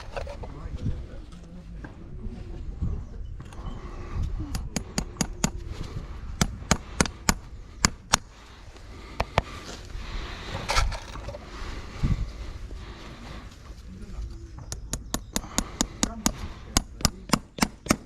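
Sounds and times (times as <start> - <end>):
metal clatter: 10.7 - 11.4.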